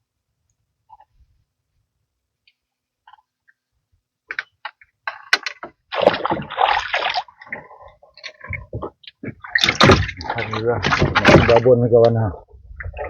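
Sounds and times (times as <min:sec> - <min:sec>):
fish splashing in water: 0:05.9 - 0:11.7.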